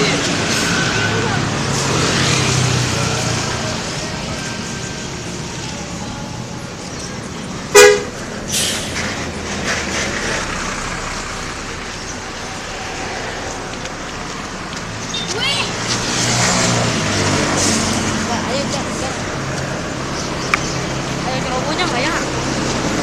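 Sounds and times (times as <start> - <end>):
road traffic: 0.0 - 23.0
bus horn toot: 7.7 - 8.2.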